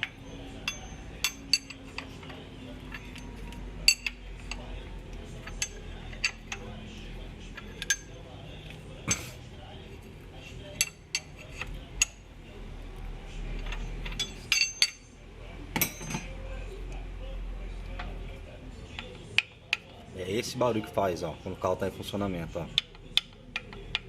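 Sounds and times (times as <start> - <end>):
sharp metallic clinks and knocks: 0.0 - 4.6, 13.6 - 15.2, 15.8 - 16.3.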